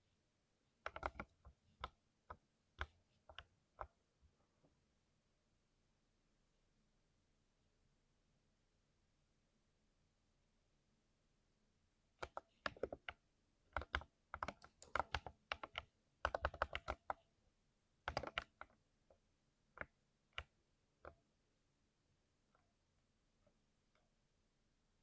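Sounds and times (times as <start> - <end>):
mechanical keyboard typing: 0.9 - 2.0, 12.2 - 13.2, 13.8 - 17.2, 18.1 - 18.8.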